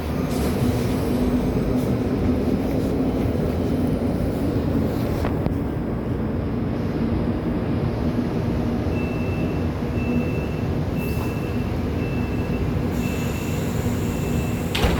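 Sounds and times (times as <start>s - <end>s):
elevator rumble and hum: 0.0s - 14.9s.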